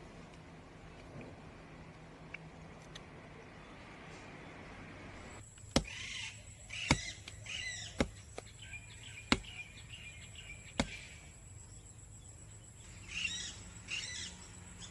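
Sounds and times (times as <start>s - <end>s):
faint bird-like chirps: 5.8s - 14.9s
sharp knocks: 8.0s - 8.2s, 9.3s - 9.5s, 10.8s - 11.0s.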